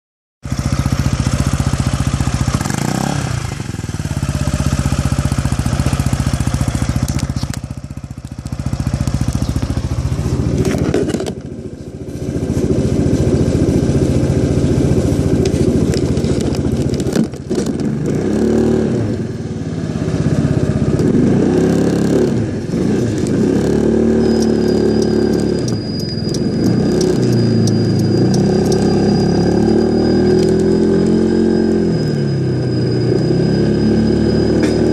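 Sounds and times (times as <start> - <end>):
scooter engine revving: 0.4 - 34.9
thin high whine: 21.7 - 34.9.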